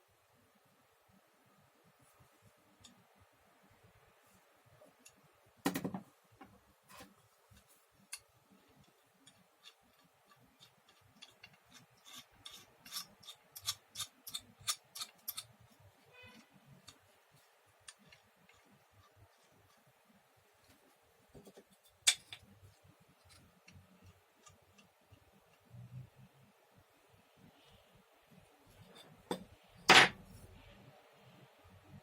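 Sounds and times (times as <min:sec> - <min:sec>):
clicks and knocks of metal parts: 0:06.9 - 0:17.1, 0:21.4 - 0:22.5.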